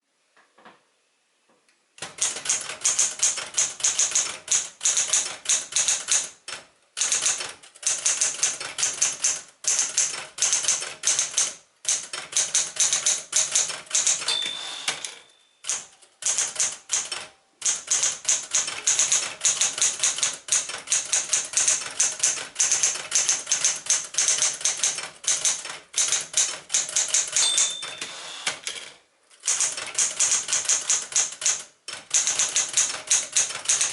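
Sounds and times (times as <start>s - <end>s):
manual typewriter keystrokes: 2.0s - 33.9s
typewriter margin bell ringing: 12.8s - 18.0s, 26.8s - 28.6s.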